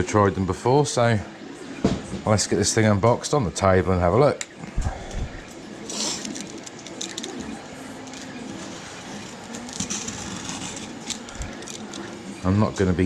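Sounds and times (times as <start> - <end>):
cardboard box rustling and scraping: 8.6 - 11.8.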